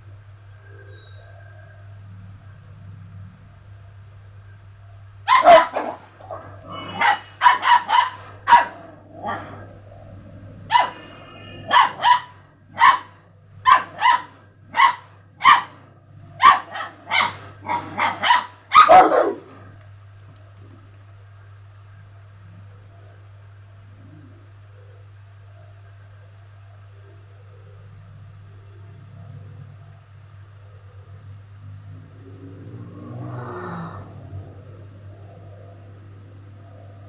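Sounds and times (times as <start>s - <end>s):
dog barking: 5.3s - 9.5s, 10.7s - 15.8s, 16.4s - 19.8s.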